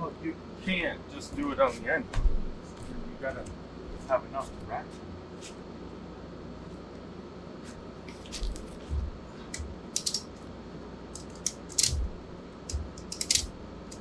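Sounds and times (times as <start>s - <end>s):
ratchet strap clicking: 9.9s - 10.4s, 11.1s - 14.0s.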